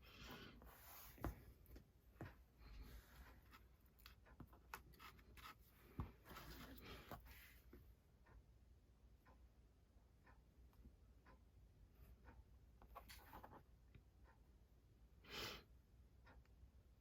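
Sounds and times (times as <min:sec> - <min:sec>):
faint paper rustling: 0:00.3 - 0:07.7.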